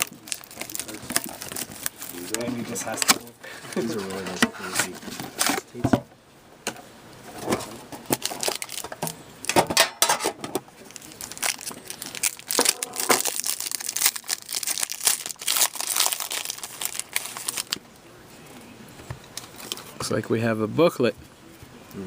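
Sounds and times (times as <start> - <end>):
packaging crinkling and tearing: 0.0 - 4.2, 7.7 - 9.2, 10.8 - 17.8.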